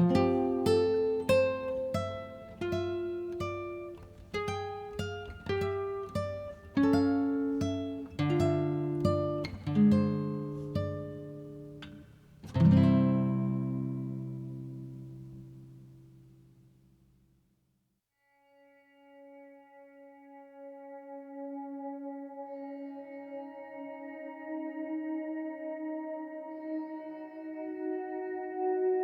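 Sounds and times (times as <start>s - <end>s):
acoustic guitar picking: 0.0s - 16.8s.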